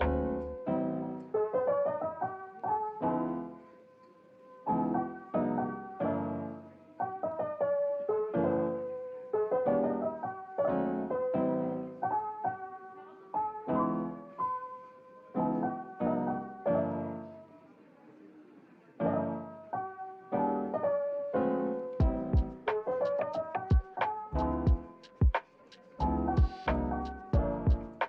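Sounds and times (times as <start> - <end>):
soft slow piano melody: 0.0 - 17.8, 18.9 - 28.0
drum beat with crisp clicks: 22.0 - 25.5, 26.4 - 28.0.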